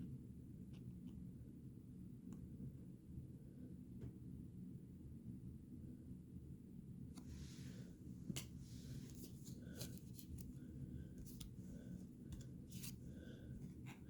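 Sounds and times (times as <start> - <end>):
trading cards being handled: 8.3 - 13.1.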